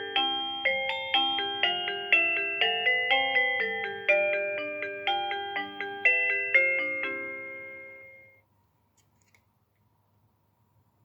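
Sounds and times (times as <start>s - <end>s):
electronic doorbell chime melody: 0.0s - 8.4s.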